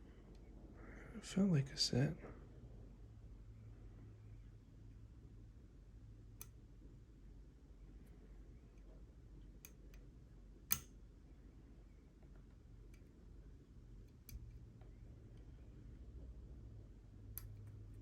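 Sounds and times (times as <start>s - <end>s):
metallic lock picking clicks: 10.7s - 10.9s.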